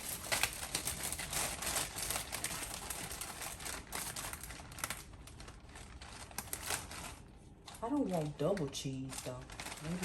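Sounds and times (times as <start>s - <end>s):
wrapping crinkling: 0.0s - 10.0s.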